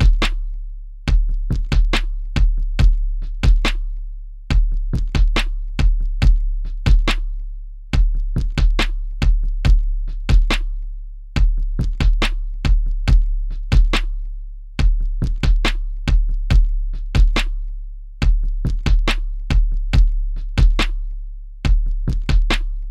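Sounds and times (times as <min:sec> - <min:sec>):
deep booming bass: 0:00.0 - 0:00.4, 0:01.1 - 0:03.8, 0:04.5 - 0:07.3, 0:07.9 - 0:10.8, 0:11.4 - 0:14.2, 0:14.8 - 0:17.6, 0:18.2 - 0:21.1, 0:21.7 - 0:22.9
drum machine hits: 0:00.0 - 0:00.4, 0:01.1 - 0:03.8, 0:04.5 - 0:07.2, 0:08.0 - 0:10.7, 0:11.4 - 0:14.1, 0:14.8 - 0:17.6, 0:18.2 - 0:21.0, 0:21.7 - 0:22.9.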